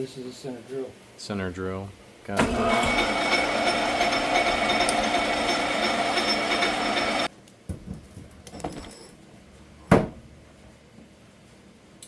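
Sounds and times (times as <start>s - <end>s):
metal lathe drilling steel: 2.4s - 7.3s.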